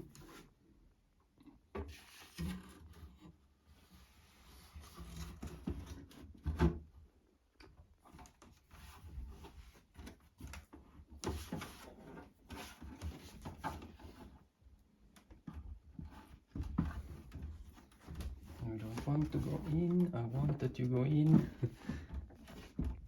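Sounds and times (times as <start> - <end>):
plastic and metal scraping and knocking: 4.8 - 7.0, 8.1 - 14.5, 15.2 - 23.0.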